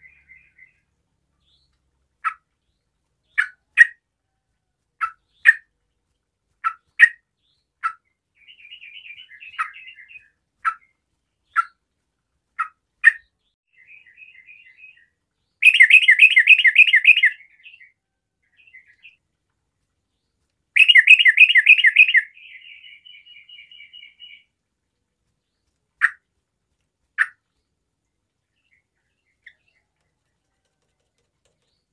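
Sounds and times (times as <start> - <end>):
bulbul singing: 13.8 - 19.2, 20.8 - 24.5.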